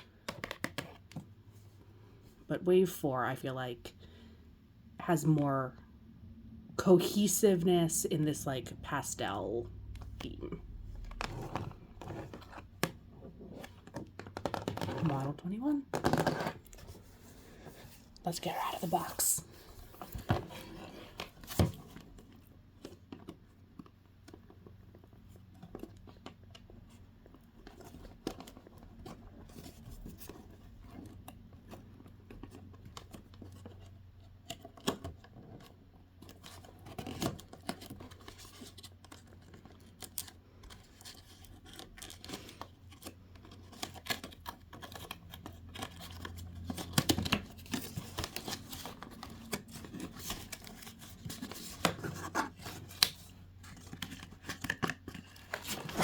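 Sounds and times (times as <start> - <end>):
cardboard packaging rustling: 10.8 - 15.4, 16.0 - 56.0.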